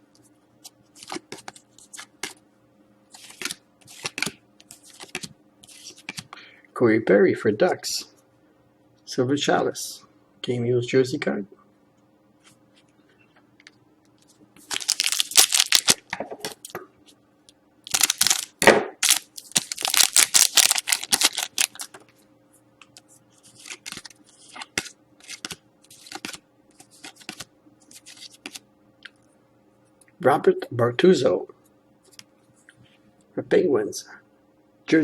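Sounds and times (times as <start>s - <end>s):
cards sliding and shuffling: 0.6s - 2.4s, 3.1s - 6.4s, 22.8s - 28.6s
packaging crinkling and tearing: 14.6s - 16.7s, 17.8s - 22.0s, 23.4s - 28.6s.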